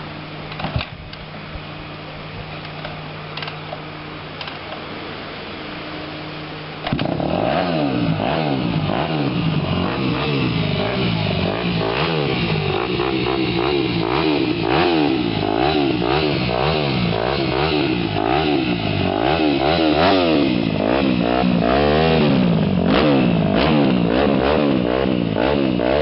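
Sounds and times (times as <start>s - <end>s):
motorbike engine revving: 6.8s - 26.0s.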